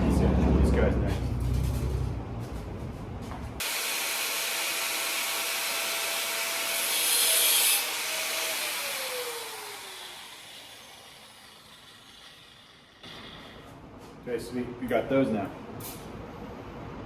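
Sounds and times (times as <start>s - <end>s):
angle grinder cutting metal: 3.6s - 13.6s
grinder winding down whine: 3.6s - 13.7s.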